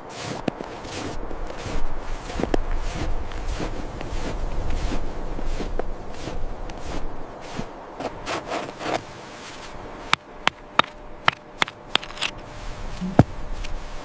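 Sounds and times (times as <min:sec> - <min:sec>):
rubbing and scraping: 0:00.1 - 0:10.2.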